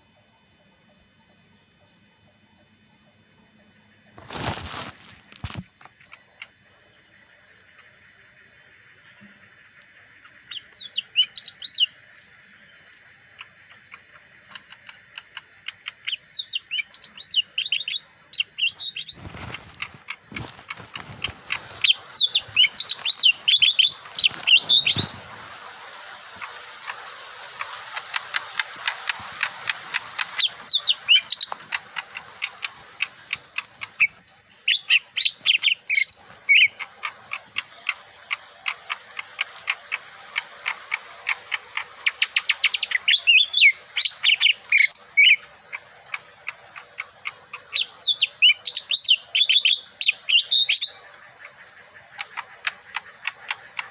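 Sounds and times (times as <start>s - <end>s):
songbird singing: 0.0s - 53.9s
dull knocks or rustles: 4.2s - 6.0s, 19.0s - 25.6s.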